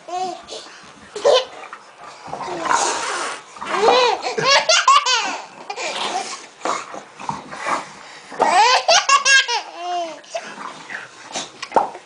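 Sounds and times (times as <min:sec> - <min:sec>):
baby laughing: 0:03.8 - 0:06.0, 0:08.4 - 0:10.4.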